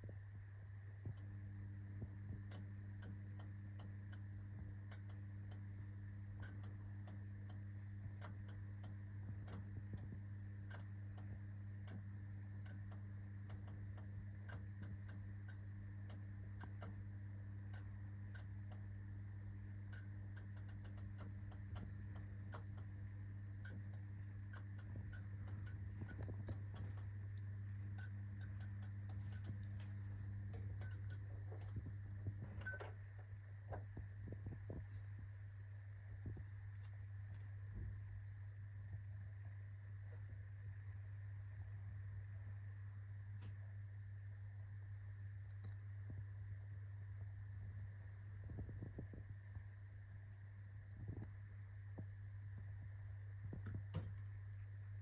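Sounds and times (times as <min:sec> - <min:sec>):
fluorescent starter clicking: 0:00.0 - 0:40.4, 0:52.0 - 0:55.0
fluorescent light mains hum: 0:00.0 - 0:55.0.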